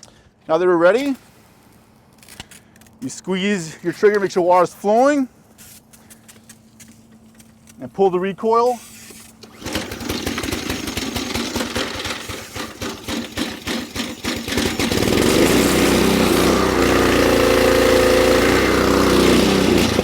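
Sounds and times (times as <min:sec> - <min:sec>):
pressure washer engine running: 0:09.4 - 0:20.0.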